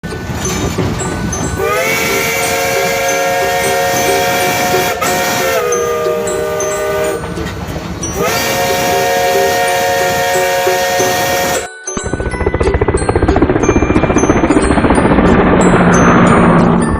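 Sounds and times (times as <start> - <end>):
train rumble: 0.0 - 16.9
train whistle chord: 1.5 - 11.8.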